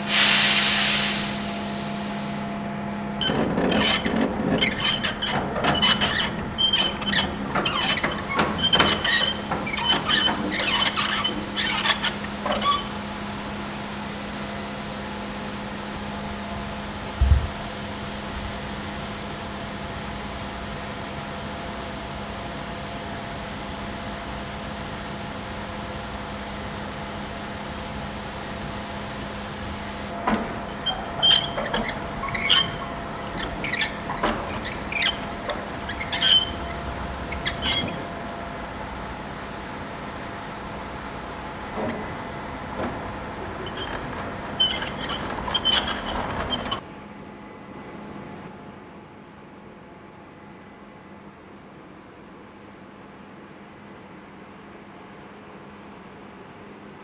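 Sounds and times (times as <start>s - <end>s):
mechanical hum: 0.0s - 47.0s
metallic clanks and rattles: 3.2s - 13.2s, 30.1s - 46.8s.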